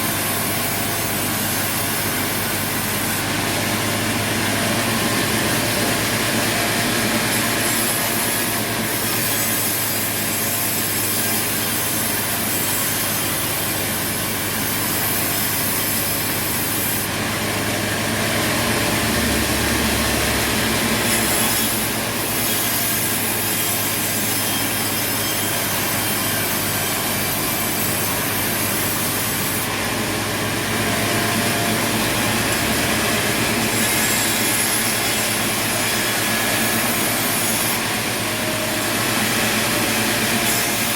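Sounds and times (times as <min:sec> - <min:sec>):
saw blade cutting wood: 0:00.0 - 0:40.9
machine motor running: 0:13.2 - 0:40.9.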